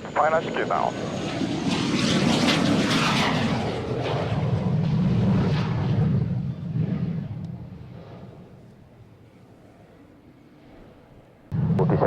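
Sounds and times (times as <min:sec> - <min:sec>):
aircraft flying past low: 0:00.0 - 0:12.0.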